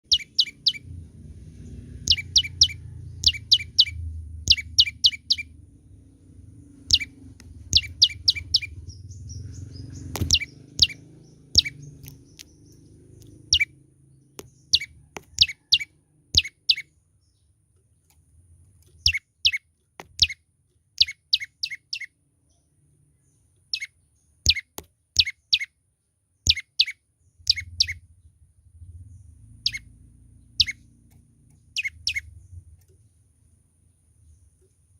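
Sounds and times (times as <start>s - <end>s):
bird chirping: 0.0s - 34.9s
low rumble: 0.2s - 15.1s, 27.6s - 32.9s.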